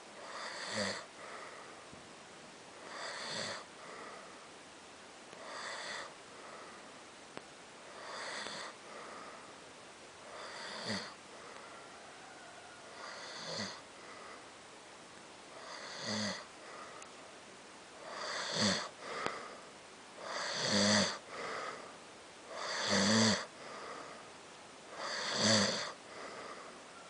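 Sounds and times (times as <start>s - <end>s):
person snoring with rattling buzz: 0.2s - 1.5s, 2.8s - 4.2s, 5.4s - 6.7s, 8.0s - 9.4s, 10.2s - 11.2s, 12.9s - 14.4s, 15.6s - 16.8s, 18.0s - 19.6s, 20.2s - 21.9s, 22.5s - 24.2s, 24.9s - 26.7s.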